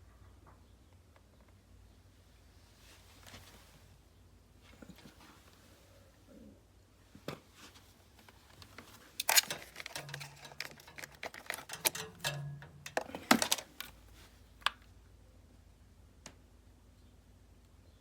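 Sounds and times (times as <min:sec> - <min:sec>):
plastic parts clicking and knocking: 0:08.6 - 0:14.0.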